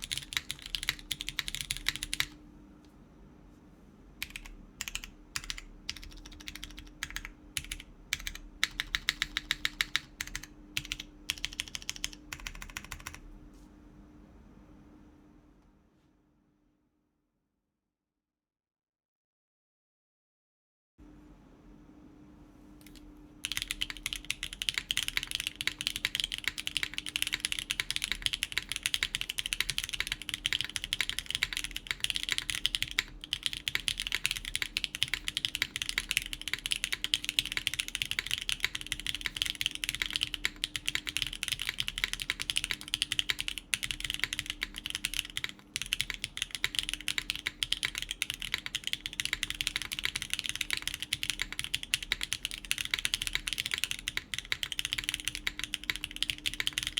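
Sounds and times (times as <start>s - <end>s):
fast typing on mechanical keyboard: 0.0s - 2.4s, 4.2s - 13.2s, 22.8s - 56.9s.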